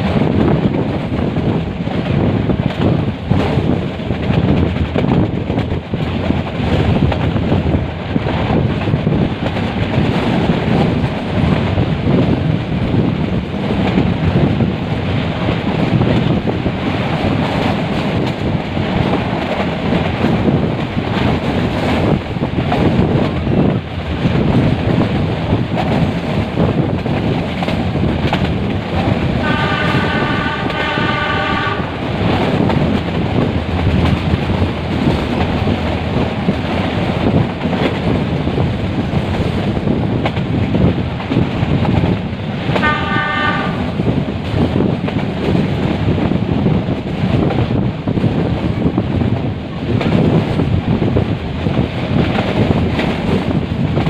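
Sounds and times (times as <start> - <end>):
passenger train running: 0.0 - 54.0
train horn blasts: 29.4 - 32.0, 42.8 - 44.0.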